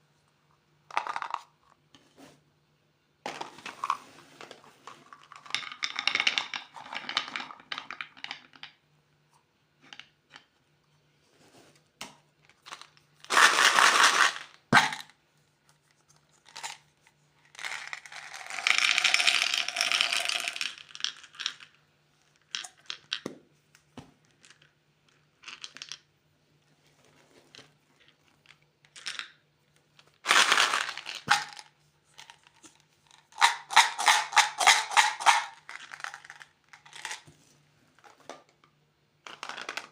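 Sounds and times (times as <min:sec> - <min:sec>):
candy wrappers crinkling and tearing: 0:30.2 - 0:31.7.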